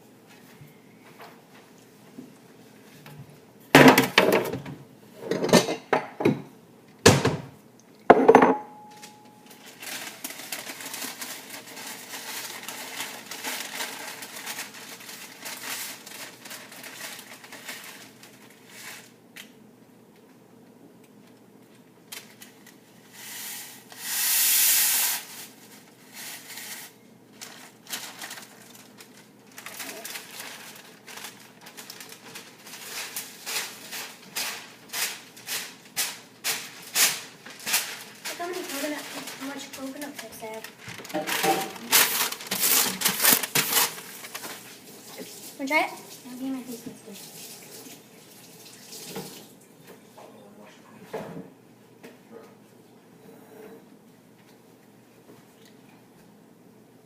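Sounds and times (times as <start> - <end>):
dishes and utensils clattering: 5.2 - 6.5
scraping and rustling: 9.6 - 19.2, 24.9 - 46.8.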